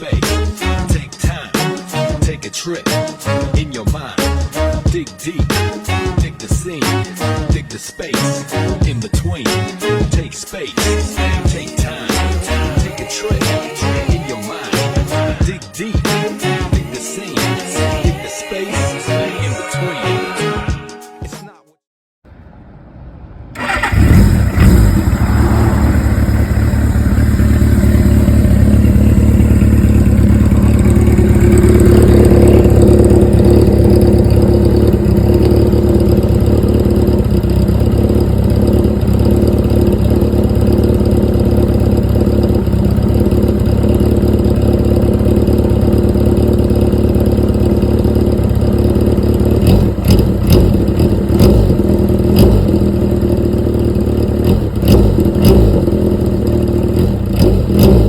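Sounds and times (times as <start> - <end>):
motorcycle engine blips: 23.6 - 58.0
motorcycle engine idling: 23.6 - 58.0.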